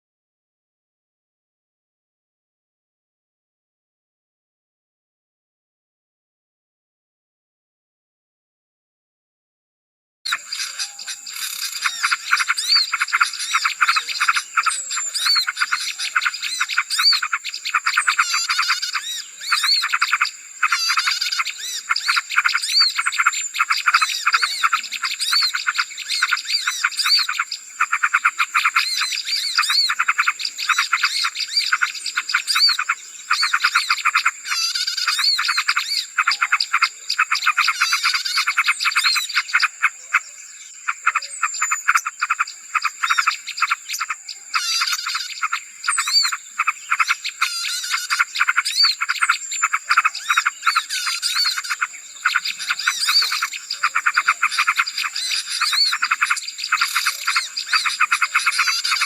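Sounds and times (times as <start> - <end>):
small birds chirping: 10.3 - 59.0.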